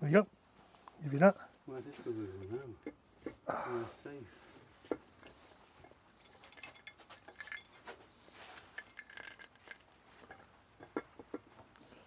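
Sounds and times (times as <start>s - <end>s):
metal tools clicking and tapping: 2.4s - 3.4s, 5.8s - 7.9s, 8.7s - 11.6s.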